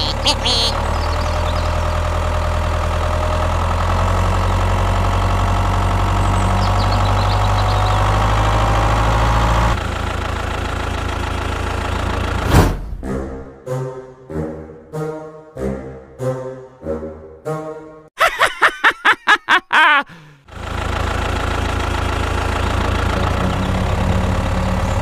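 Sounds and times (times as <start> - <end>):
tractor engine running: 0.0 - 12.6, 20.4 - 25.0.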